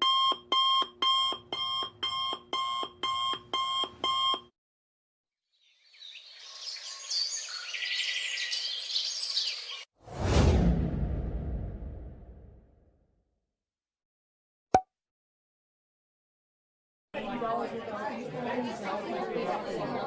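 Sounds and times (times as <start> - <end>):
digital alarm clock beeping: 0.0 - 4.5
sudden loud hit: 10.1 - 12.7.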